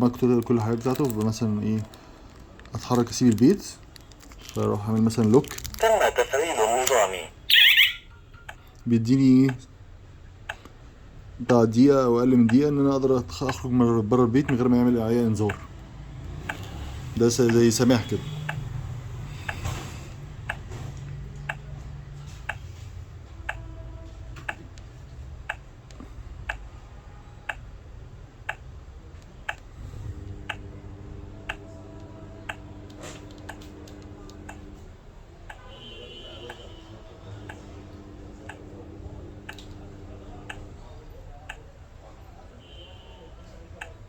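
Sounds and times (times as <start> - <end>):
alarm panel ticking: 25.5 - 25.7, 28.5 - 28.7.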